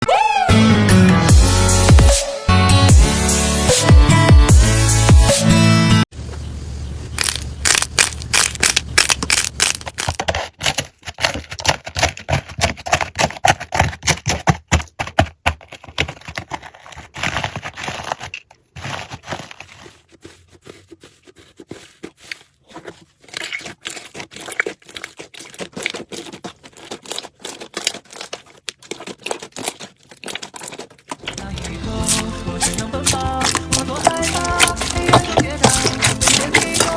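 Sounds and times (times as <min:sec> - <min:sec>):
slime crackling and popping: 0:07.1 - 0:10.2, 0:23.3 - 0:36.9.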